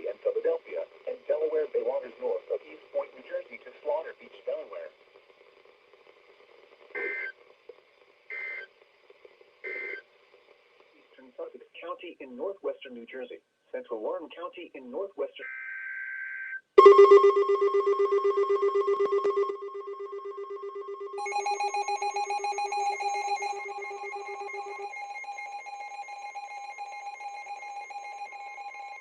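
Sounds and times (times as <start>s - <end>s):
electronic alert tones pulsing: 16.8s - 29.0s.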